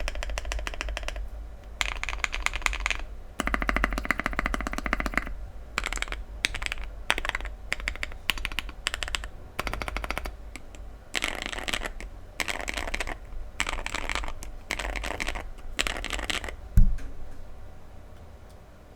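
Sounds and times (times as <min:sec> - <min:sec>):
mechanical keyboard typing: 0:00.0 - 0:16.7
low thump: 0:16.8 - 0:17.4.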